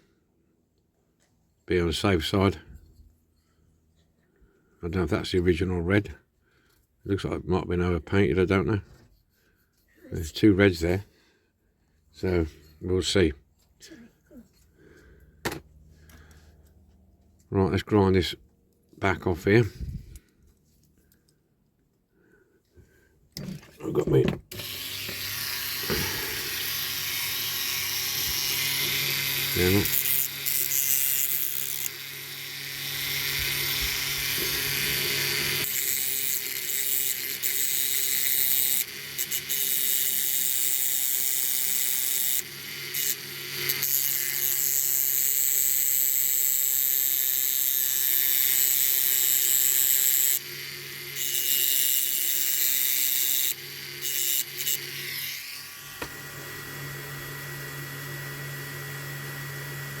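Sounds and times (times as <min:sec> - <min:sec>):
rotary tool grinding metal: 0:23.4 - 0:56.1.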